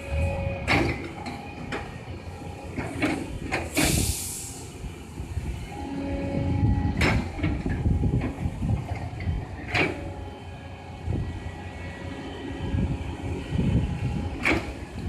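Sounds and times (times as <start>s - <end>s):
excavator diesel engine running: 0.0s - 15.0s
hydraulic whine: 0.0s - 15.0s
brief hiss: 3.7s - 4.7s.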